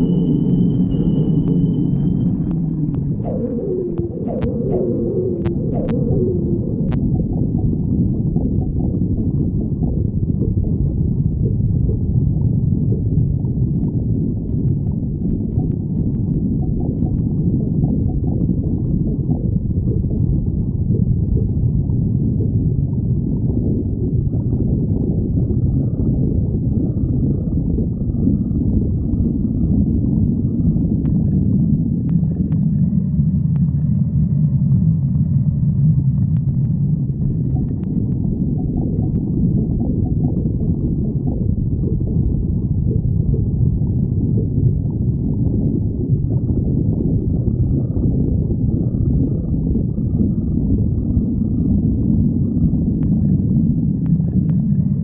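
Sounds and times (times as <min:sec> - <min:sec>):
faint high whining tones: 0:00.0 - 0:10.7
stomach growling low rumble: 0:00.0 - 0:55.0.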